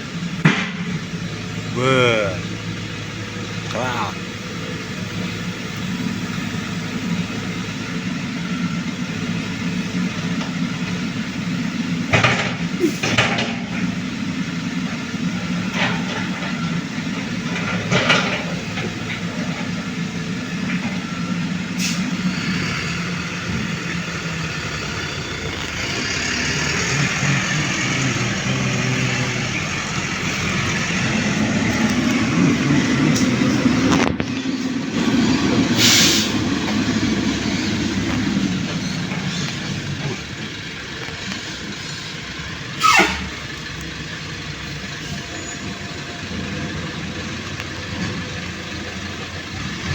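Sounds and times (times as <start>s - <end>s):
loud hiss: 35.8s - 36.4s.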